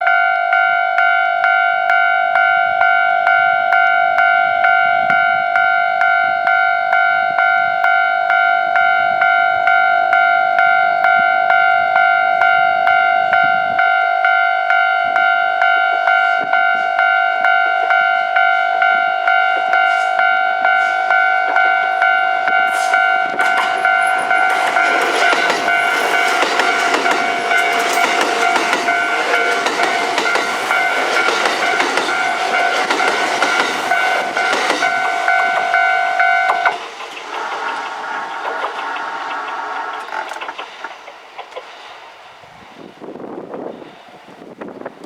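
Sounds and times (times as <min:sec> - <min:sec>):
level crossing bell ringing: 0:00.0 - 0:36.7
train wheels clacking over joints: 0:22.6 - 0:42.0.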